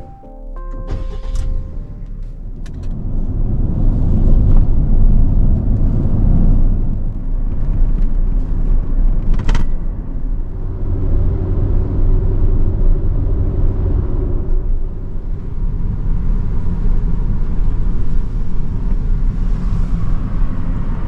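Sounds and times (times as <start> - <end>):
brief sharp sound: 0.0 - 2.8
engine and road rumble: 0.0 - 21.0.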